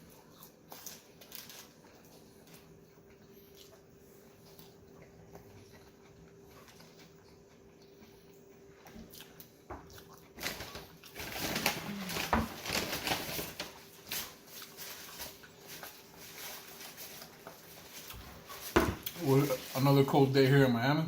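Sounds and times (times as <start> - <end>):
chewing and smacking: 0.0 - 12.0, 12.7 - 19.2
crinkling: 0.7 - 3.5, 10.3 - 20.5.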